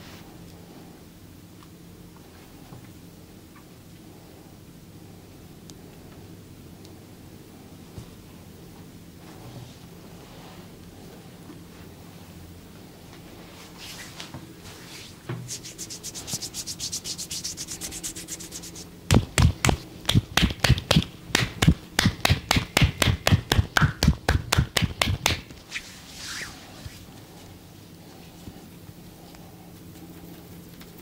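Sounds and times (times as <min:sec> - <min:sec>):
fine scratching massage strokes: 0:09.2 - 0:12.4, 0:13.2 - 0:29.3
rhythmic hand slaps on body: 0:15.5 - 0:25.6.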